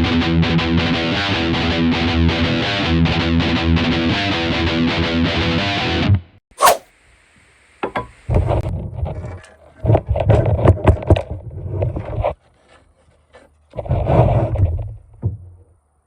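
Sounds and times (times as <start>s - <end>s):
scraping and knocking: 9.0s - 14.0s.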